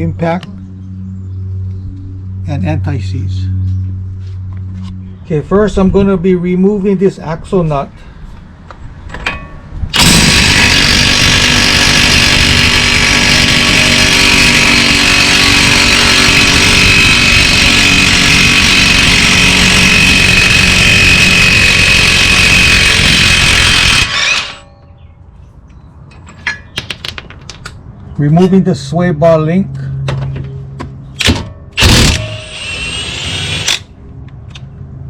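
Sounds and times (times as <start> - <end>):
impact wrench running: 9.9 - 24.6, 31.8 - 33.9.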